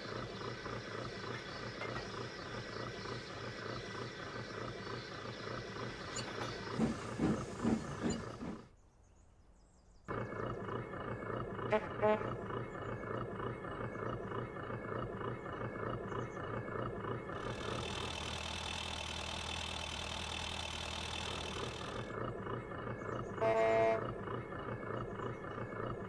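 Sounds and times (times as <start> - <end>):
heavy locomotive pulses: 0.0 - 8.7, 10.1 - 26.0
locomotive engine running: 0.0 - 8.8, 10.1 - 26.0
train whistle or horn: 23.4 - 24.0.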